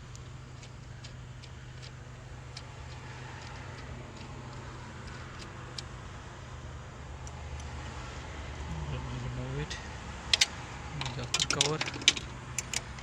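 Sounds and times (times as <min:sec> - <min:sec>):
socket wrench clicking: 0:10.3 - 0:13.0.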